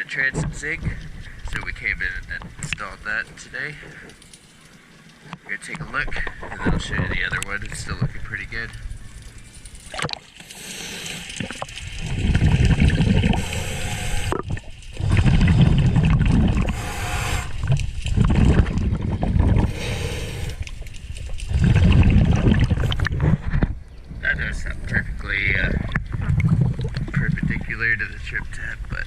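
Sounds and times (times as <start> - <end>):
exhaled bubbles burbling: 9.9 - 23.8, 24.4 - 29.0
regulator inhale hiss: 10.4 - 11.7, 13.1 - 14.4, 16.6 - 17.8, 19.6 - 20.9.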